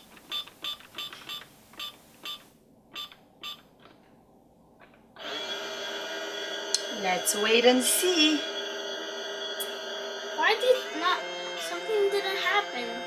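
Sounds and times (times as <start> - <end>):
toy microwave running hum: 5.2 - 13.0.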